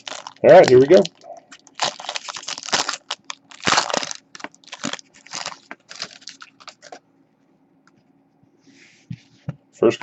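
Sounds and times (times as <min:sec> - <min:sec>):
plastic wrapping crinkling and tearing: 0:00.0 - 0:07.0.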